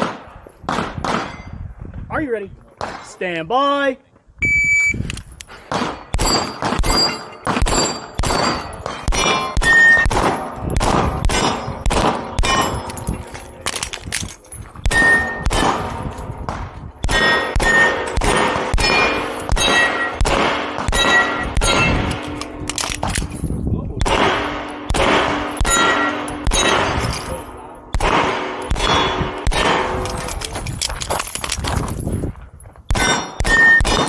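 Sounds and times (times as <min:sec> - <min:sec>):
handgun shots: 0:05.7 - 0:13.0, 0:14.8 - 0:23.4, 0:24.0 - 0:27.2, 0:28.0 - 0:30.5, 0:32.9 - 0:34.0
steel plate ringing clang: 0:06.2 - 0:13.3, 0:14.9 - 0:16.1, 0:17.0 - 0:22.7, 0:24.3 - 0:27.8, 0:32.9 - 0:34.0.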